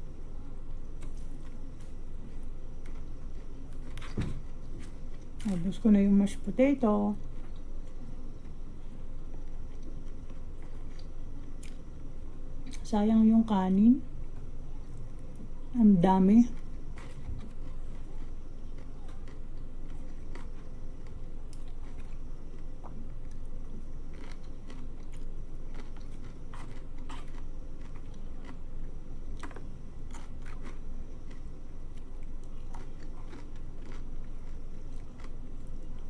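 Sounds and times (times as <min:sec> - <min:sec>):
steady low hum: 0:00.0 - 0:36.0
person chewing and crunching: 0:09.3 - 0:12.0, 0:16.5 - 0:36.0.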